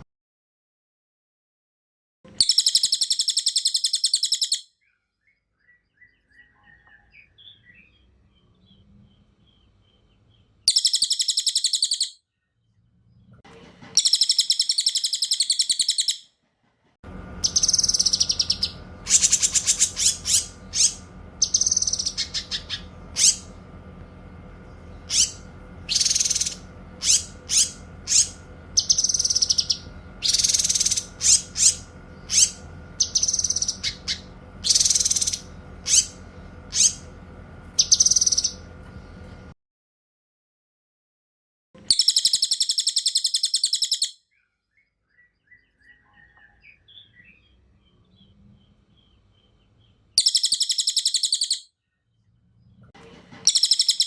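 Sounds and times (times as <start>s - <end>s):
high-pitched bird trills: 2.3s - 8.0s, 10.7s - 12.2s, 14.0s - 16.3s, 17.4s - 23.6s, 24.8s - 37.1s, 37.8s - 38.7s, 41.9s - 44.3s, 50.2s - 51.7s, 53.5s - 54.0s
sharp bird chirps: 2.3s - 12.6s, 14.0s - 16.3s, 17.4s - 23.6s, 24.7s - 37.1s, 37.8s - 38.7s, 41.9s - 52.2s, 53.5s - 54.0s
steady low hum: 16.7s - 39.6s.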